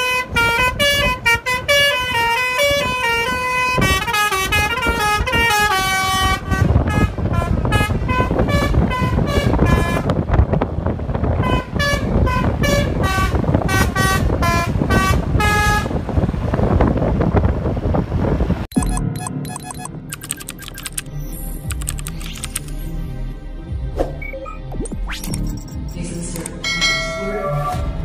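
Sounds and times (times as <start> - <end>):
musical bus horn playing staccato tune: 0.0 - 10.3, 11.3 - 16.1
bus engine rumble: 0.0 - 24.3, 25.2 - 28.0.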